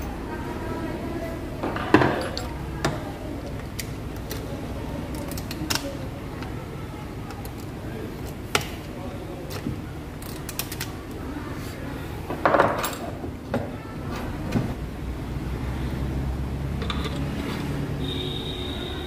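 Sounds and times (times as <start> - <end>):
clicks and knocks of tools: 1.6 - 4.5, 5.1 - 6.5, 9.5 - 11.0, 16.8 - 17.7.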